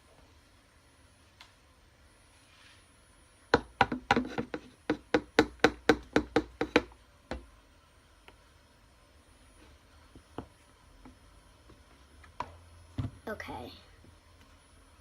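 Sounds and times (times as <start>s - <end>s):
hard object tapping: 3.5s - 7.5s.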